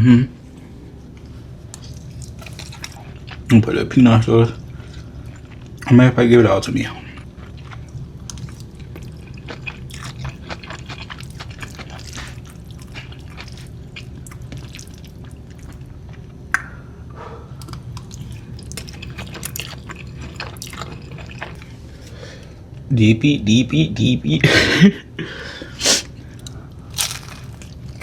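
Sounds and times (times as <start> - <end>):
steady low hum: 0.0 - 28.0
wet sticky squishing of noodles: 7.5 - 15.8, 26.9 - 28.0.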